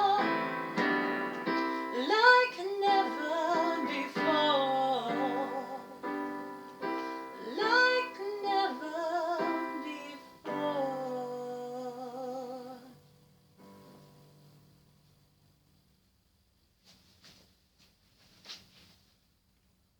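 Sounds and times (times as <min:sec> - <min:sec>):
woman singing: 0:00.0 - 0:13.0
piano accompaniment: 0:00.0 - 0:15.2.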